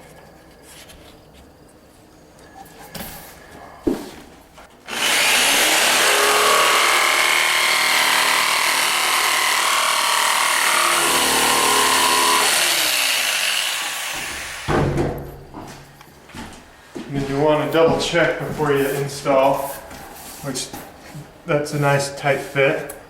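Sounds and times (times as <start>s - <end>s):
electric power saw cutting: 4.9s - 14.7s.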